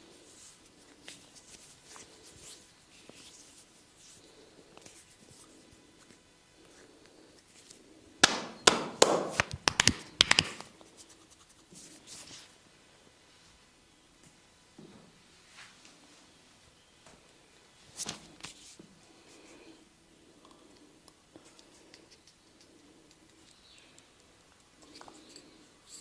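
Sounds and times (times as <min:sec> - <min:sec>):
hands rubbing during massage: 0:00.2 - 0:06.8, 0:08.7 - 0:12.5
sharp snaps and slaps: 0:08.2 - 0:10.7.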